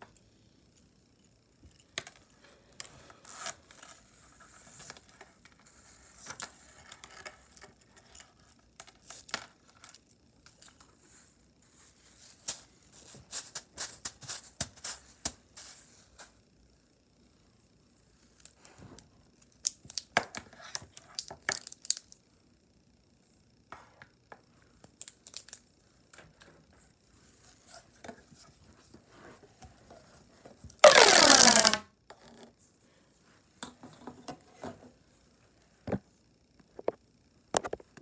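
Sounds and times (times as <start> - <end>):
loud ripping: 30.8 - 31.8.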